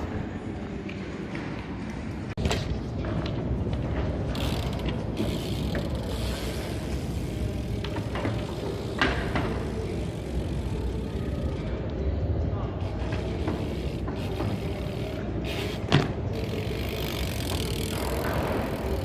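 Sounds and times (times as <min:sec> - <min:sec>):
bike freewheel ratcheting: 0:04.2 - 0:11.6, 0:12.8 - 0:19.0.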